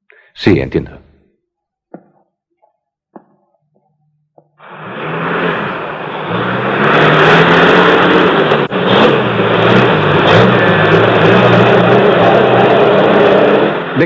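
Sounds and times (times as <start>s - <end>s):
car engine driving: 3.2s - 14.0s.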